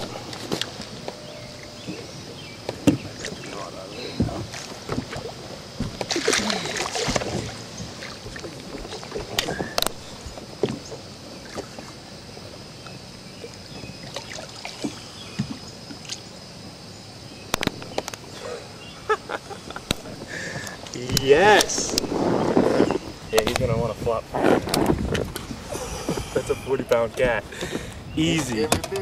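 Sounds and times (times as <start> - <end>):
water splashing: 0.0 - 16.5
knocks against boat: 2.7 - 3.4, 4.1 - 6.4, 7.0 - 10.9, 26.9 - 29.0.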